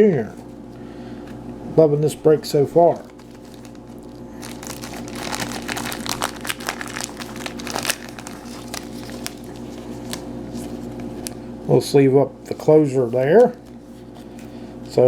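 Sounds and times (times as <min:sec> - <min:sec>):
plastic packaging crinkling: 0:02.8 - 0:11.5.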